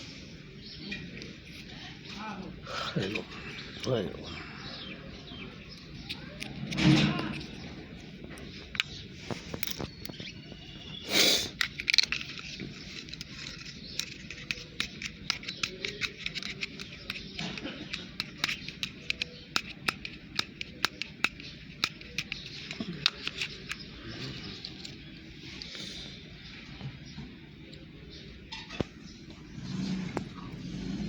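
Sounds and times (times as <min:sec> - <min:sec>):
toys clicking and knocking: 0:05.7 - 0:07.7, 0:08.3 - 0:10.2, 0:11.5 - 0:25.1.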